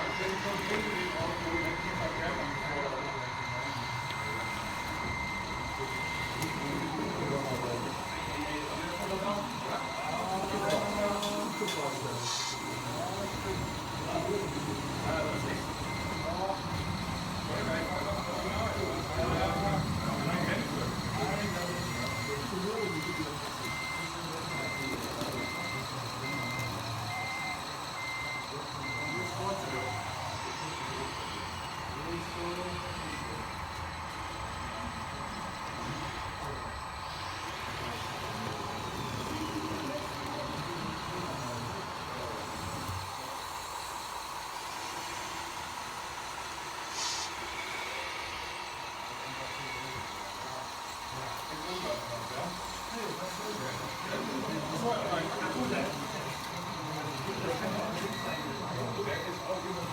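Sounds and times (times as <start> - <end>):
small motor whine: 0.0 - 59.9
backup alarm beeping: 0.2 - 37.4
short hiss: 46.9 - 47.3.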